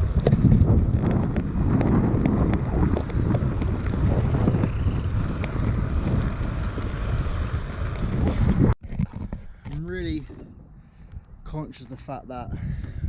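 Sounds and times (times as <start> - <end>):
skate wheels rolling on pavement: 0.0 - 10.3
wind buffeting microphone: 0.0 - 13.0.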